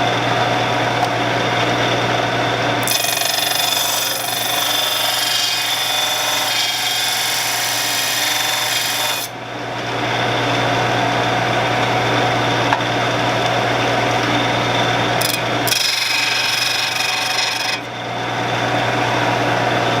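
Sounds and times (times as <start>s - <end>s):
tool grinding on abrasive: 2.8s - 9.3s, 14.4s - 17.9s.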